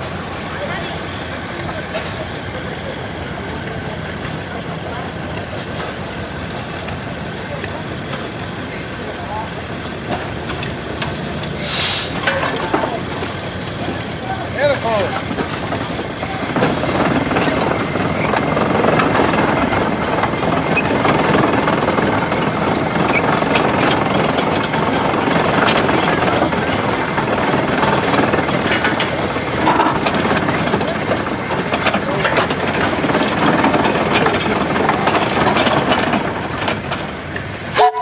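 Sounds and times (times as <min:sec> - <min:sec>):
steam hissing: 0:00.0 - 0:38.0
steam traction engine running: 0:00.0 - 0:38.0.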